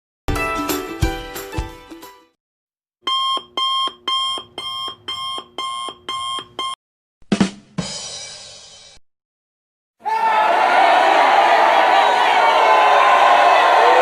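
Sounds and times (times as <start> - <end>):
alarm clock beeping: 3.1 - 6.8.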